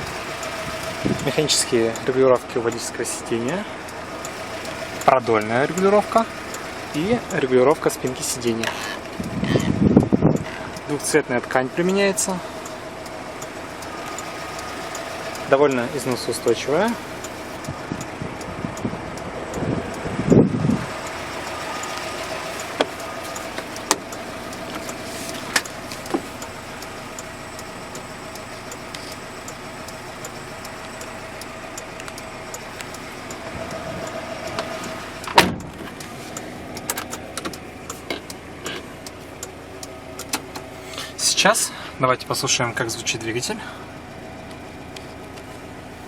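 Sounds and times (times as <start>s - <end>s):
mechanical hum in van cab: 0.0s - 46.0s
sharp clicks: 12.6s - 40.7s
loud clunk: 35.3s - 35.9s.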